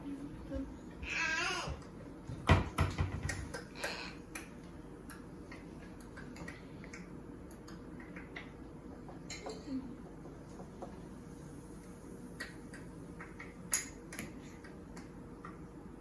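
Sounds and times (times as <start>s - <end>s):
hard objects knocking: 2.4s - 3.7s.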